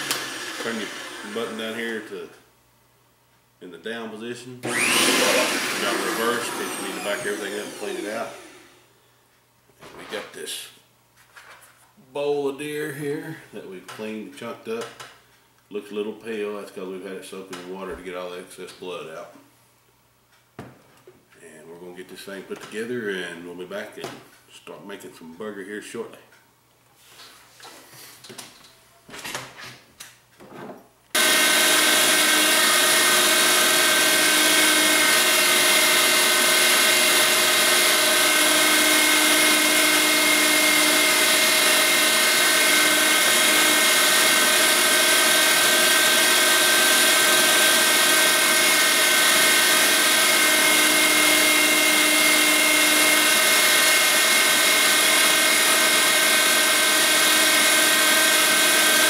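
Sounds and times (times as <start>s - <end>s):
meat grinder motor whining: 0.0s - 2.1s, 4.6s - 8.8s, 31.2s - 59.0s.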